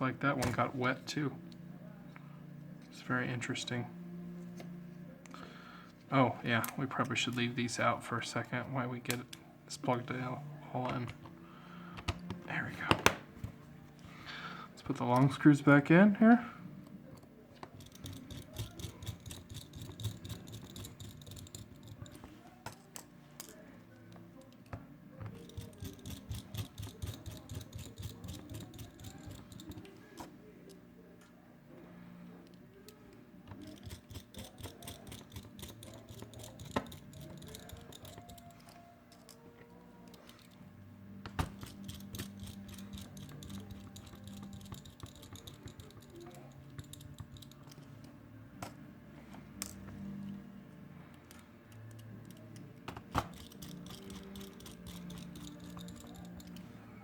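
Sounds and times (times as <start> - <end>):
screwdriver driving small screws: 17.8 - 22.2, 25.4 - 29.8, 33.6 - 39.4, 41.5 - 47.8, 53.2 - 56.6.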